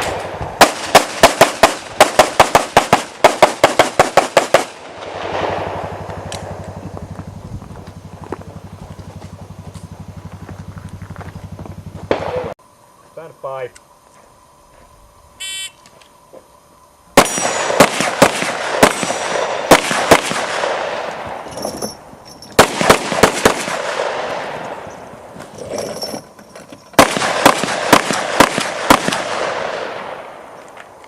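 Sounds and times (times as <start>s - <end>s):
rapid pistol shots: 0.0s - 6.8s, 17.2s - 21.1s, 22.6s - 24.6s, 27.0s - 30.2s.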